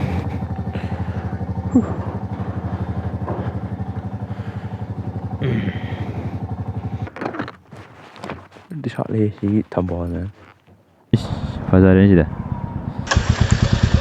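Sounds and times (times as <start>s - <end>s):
motorcycle engine idling: 0.0s - 7.9s, 11.2s - 14.0s.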